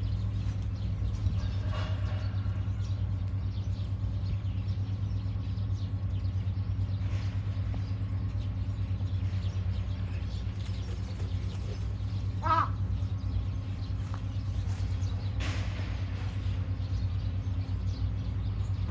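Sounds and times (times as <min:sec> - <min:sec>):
small birds chirping: 0:00.0 - 0:18.9.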